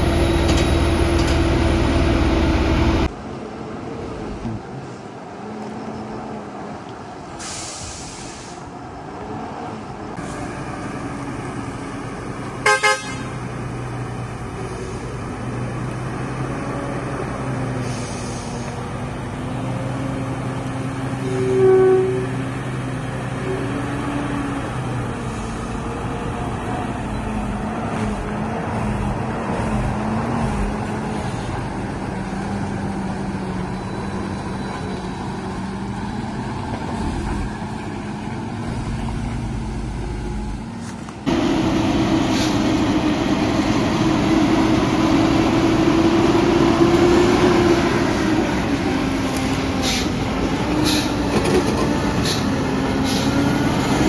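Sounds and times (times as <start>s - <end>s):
truck engine running: 0.0s - 3.1s, 37.0s - 54.0s
vehicle horn honk: 12.6s - 13.4s.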